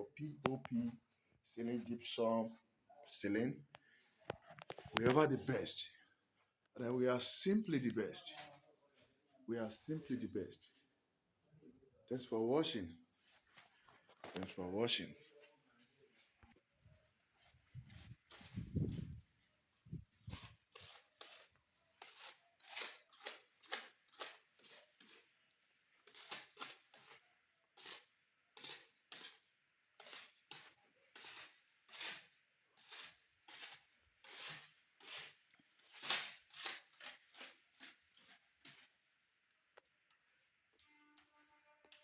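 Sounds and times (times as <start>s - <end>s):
gritty scraping strokes: 17.4s - 19.2s, 19.9s - 40.4s.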